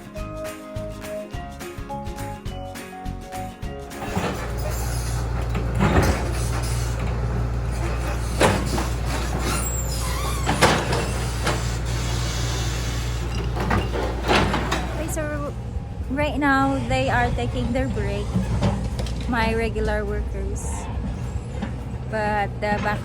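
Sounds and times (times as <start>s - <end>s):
bucket and rocks clanking: 4.0s - 15.5s
metallic squeaks: 4.0s - 15.5s, 16.9s - 23.0s
diesel engine running under load: 4.0s - 23.0s.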